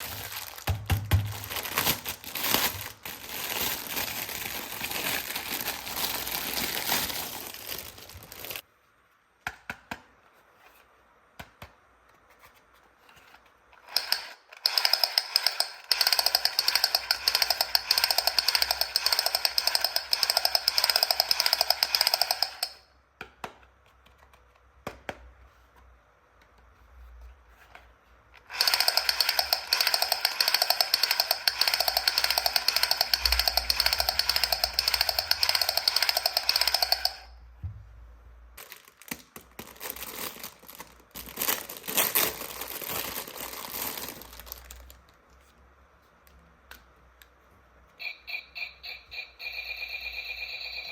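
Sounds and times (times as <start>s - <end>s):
plastic packaging crinkling: 0.0s - 8.7s, 38.6s - 45.3s
toy rifle rapid-fire rattle: 13.8s - 22.8s, 28.4s - 37.3s.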